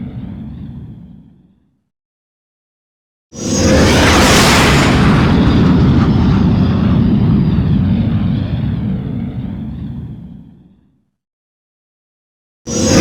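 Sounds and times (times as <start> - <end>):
spaceship engine flyby: 3.4 - 9.2.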